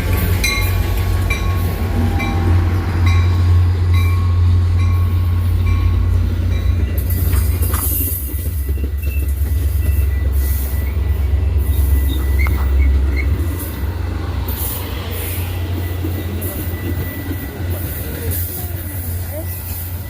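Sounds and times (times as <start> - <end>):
train rumble: 0.0 - 20.0
high-pitched squeal: 6.6 - 20.0.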